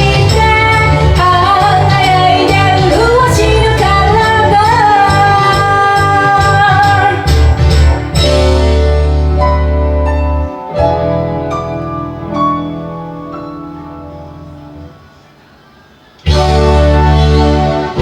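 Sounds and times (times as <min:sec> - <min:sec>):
woman singing pop song: 0:00.0 - 0:07.4
karaoke backing track: 0:00.0 - 0:18.0.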